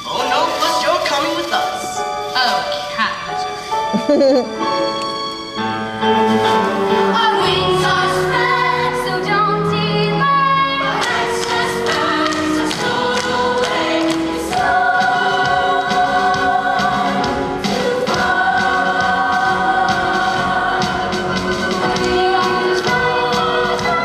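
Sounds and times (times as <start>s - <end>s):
instrumental accompaniment: 0.0s - 24.0s
chorus singing: 6.0s - 24.0s.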